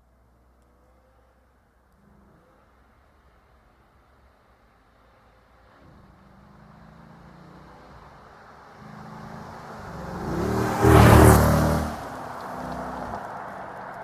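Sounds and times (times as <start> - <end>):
car engine driving past: 5.8 - 14.0.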